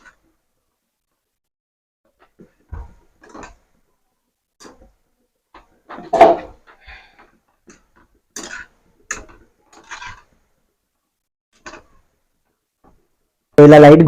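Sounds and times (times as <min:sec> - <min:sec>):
oil frying: 0:07.4 - 0:13.0
metal spoon clinking and scraping in pan: 0:07.7 - 0:10.4.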